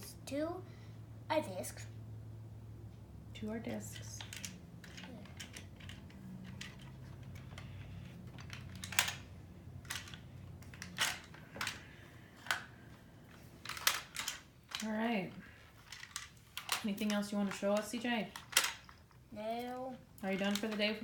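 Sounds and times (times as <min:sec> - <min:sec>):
faint low hum: 0:00.0 - 0:21.0
plastic toy parts clicking: 0:03.9 - 0:12.7, 0:13.6 - 0:14.9, 0:15.8 - 0:21.0.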